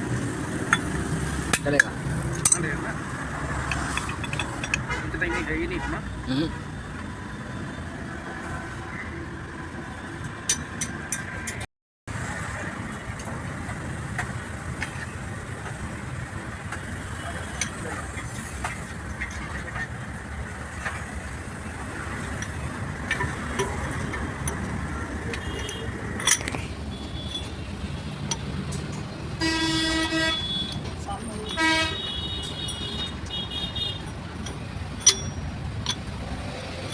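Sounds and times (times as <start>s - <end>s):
traffic and street noise: 0.0s - 36.9s
vehicle horn honking: 29.4s - 30.8s, 31.5s - 34.1s.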